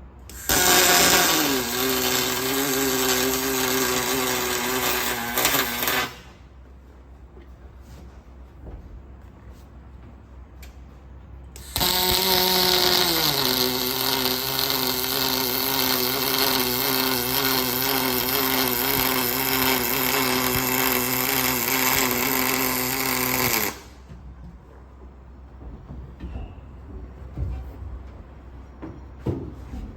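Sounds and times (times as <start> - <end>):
welding arc buzzing crackle: 0.3 - 6.4, 11.6 - 24.0.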